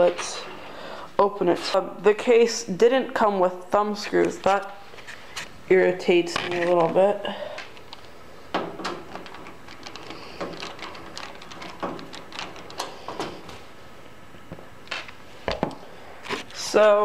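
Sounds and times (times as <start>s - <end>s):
screws clicking and scraping: 9.1s - 13.3s.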